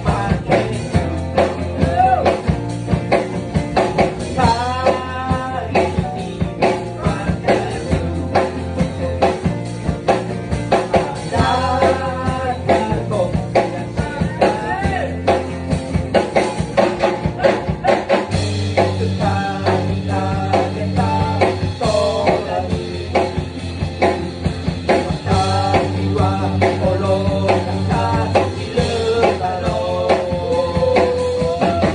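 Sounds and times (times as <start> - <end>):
person singing: 0.0 - 2.5, 4.1 - 8.5, 10.7 - 15.3, 16.3 - 23.5, 24.9 - 31.9
rock band playing live: 0.0 - 31.9.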